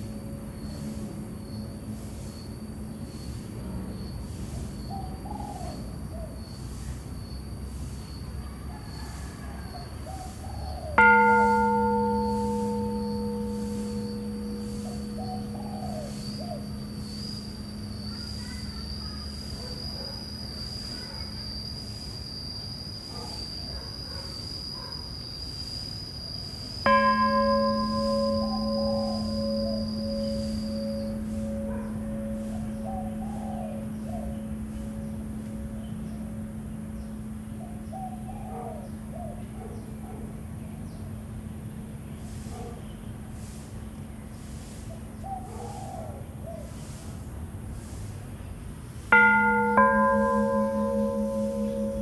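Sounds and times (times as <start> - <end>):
temple bell ringing: 0.0 - 1.9, 11.0 - 20.0, 26.9 - 39.6, 49.1 - 52.0
steady high-pitched hum: 0.0 - 5.0, 11.0 - 23.1, 25.8 - 41.9, 49.1 - 52.0
faint high pulsing tone: 11.0 - 20.0, 26.9 - 39.6, 49.1 - 52.0.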